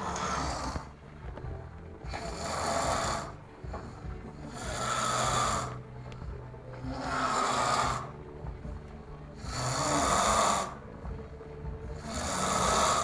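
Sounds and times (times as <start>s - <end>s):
person snoring: 0.0s - 1.0s, 2.0s - 5.9s, 6.8s - 8.3s, 9.4s - 11.1s, 11.9s - 13.0s
faint background music: 0.0s - 13.0s.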